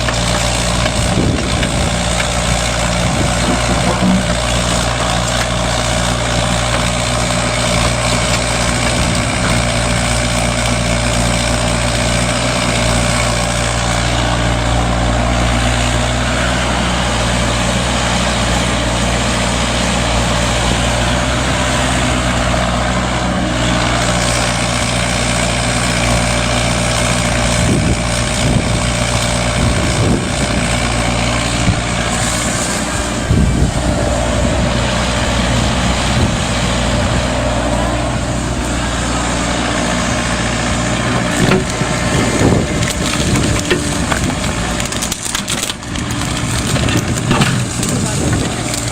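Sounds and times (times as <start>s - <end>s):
short knocks: 0.0s - 4.8s, 41.0s - 44.4s
excavator diesel engine running: 0.0s - 48.9s.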